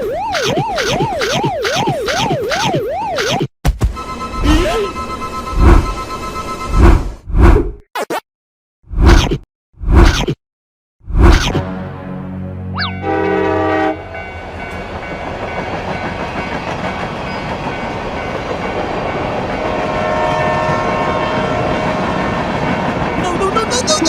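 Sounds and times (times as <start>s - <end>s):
train horn blast: 12.9s - 14.3s, 19.7s - 22.1s
train rumble: 13.6s - 24.0s.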